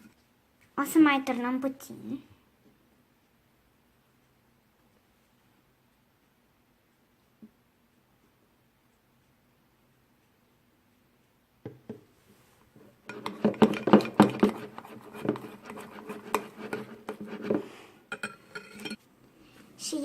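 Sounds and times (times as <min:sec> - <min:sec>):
spoon stirring slime in a bowl: 0:12.8 - 0:19.0.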